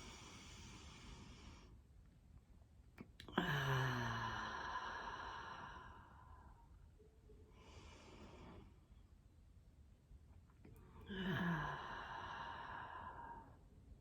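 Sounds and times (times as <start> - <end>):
quiet breath: 0.0 - 1.9, 3.3 - 9.2, 10.6 - 14.0
person exhaling deeply: 3.3 - 6.5, 11.0 - 13.6.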